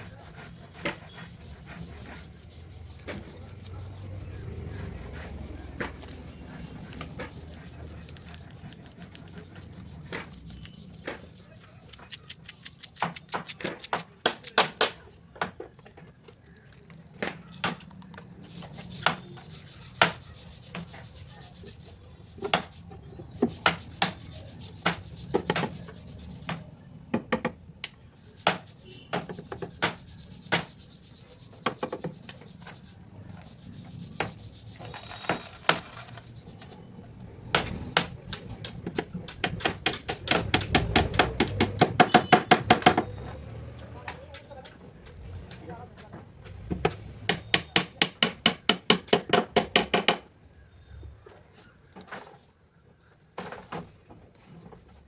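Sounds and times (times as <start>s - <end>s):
hand tool knocking on wood: 37.6s - 43.1s.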